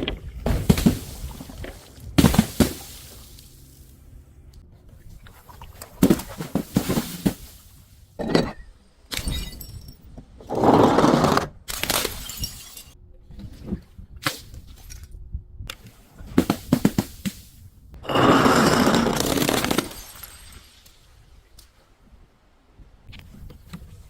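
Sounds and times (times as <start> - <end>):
glass bottles breaking and crunching: 0.5 - 3.8, 6.0 - 10.2, 11.7 - 13.0, 18.1 - 21.1.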